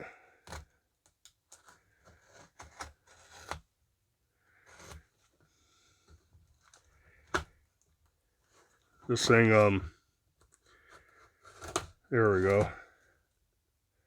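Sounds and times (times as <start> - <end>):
knife scraping package tape: 1.6 - 3.7, 10.8 - 12.6.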